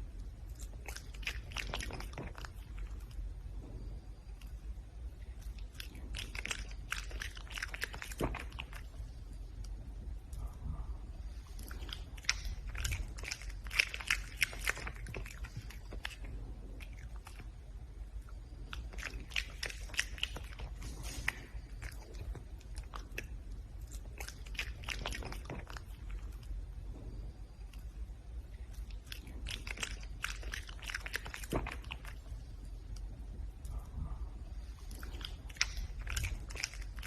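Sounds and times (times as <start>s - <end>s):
animal chewing and crunching food: 0.0s - 37.0s
low hum: 0.0s - 37.0s
low rumble: 8.2s - 13.8s, 25.2s - 30.2s, 31.5s - 37.0s.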